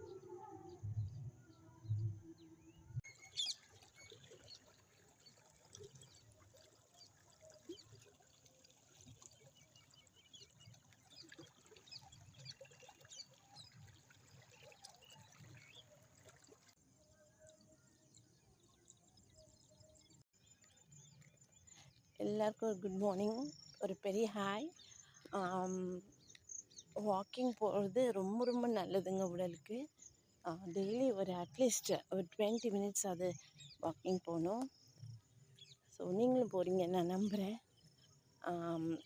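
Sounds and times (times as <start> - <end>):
small birds chirping: 0.0 - 4.6.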